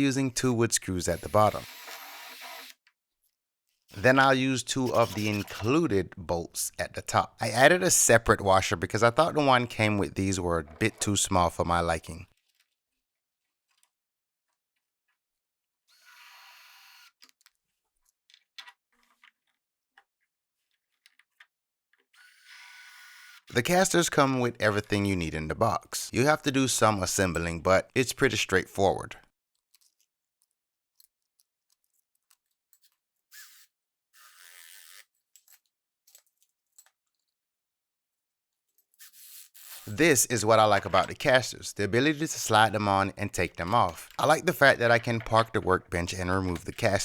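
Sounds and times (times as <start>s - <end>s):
power drill running: 1.2s - 2.7s
short rasping noises: 4.8s - 5.8s.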